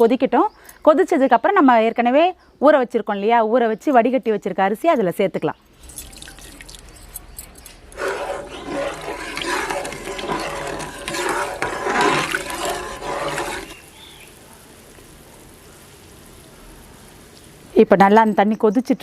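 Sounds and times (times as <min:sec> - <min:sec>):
water boiling hard: 0:05.8 - 0:07.1, 0:07.8 - 0:17.8.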